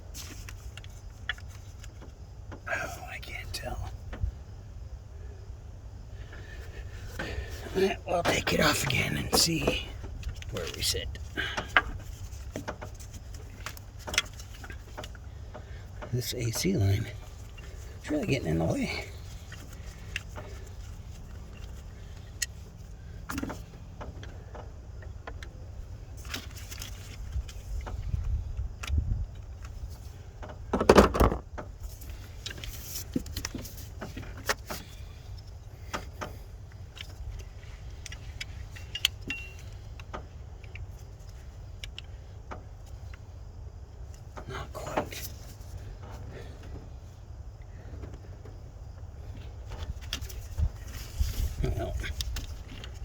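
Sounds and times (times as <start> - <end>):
knock and rattle: 30.4 - 31.7.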